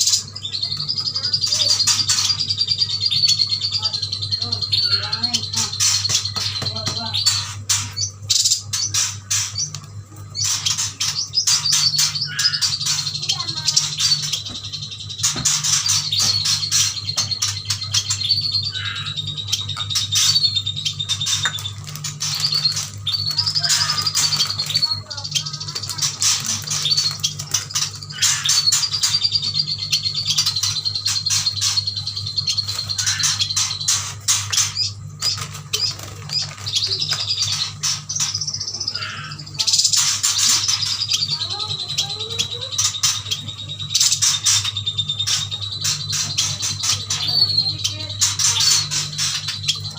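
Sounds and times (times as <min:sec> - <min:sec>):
birds chirping and trilling: 0:00.0 - 0:49.9
steady low hum: 0:00.0 - 0:49.9
wings fluttering: 0:15.2 - 0:29.4, 0:32.4 - 0:49.9.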